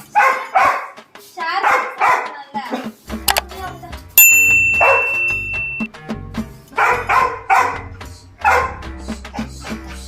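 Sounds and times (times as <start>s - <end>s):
dog barking: 0.0s - 1.0s, 1.6s - 2.9s, 4.8s - 5.3s, 6.8s - 8.8s
background music: 0.0s - 10.0s
high steady chime: 4.2s - 5.9s.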